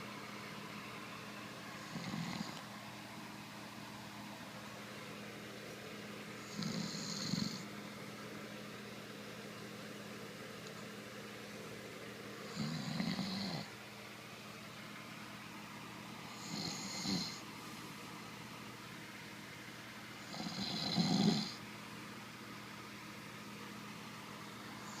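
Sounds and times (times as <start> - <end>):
man snoring: 1.8 - 2.6, 6.4 - 7.7, 12.5 - 13.7, 16.3 - 17.4, 20.2 - 21.6.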